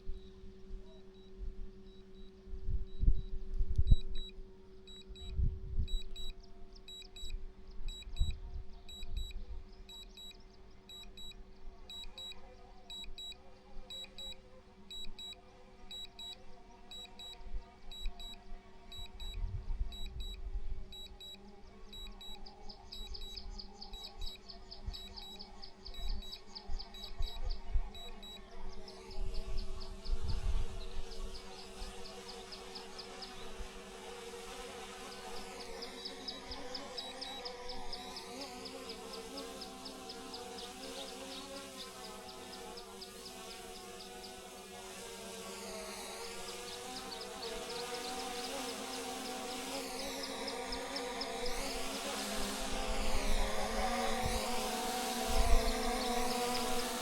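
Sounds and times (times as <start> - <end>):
wind rumbling on microphone: 5.1 - 6.1, 19.3 - 20.9, 29.2 - 31.3
high beeps: 5.9 - 6.3, 6.9 - 7.3, 7.9 - 9.3, 9.9 - 19.4, 22.0 - 22.4
drone propellers buzzing: 11.9 - 15.3, 15.9 - 57.0.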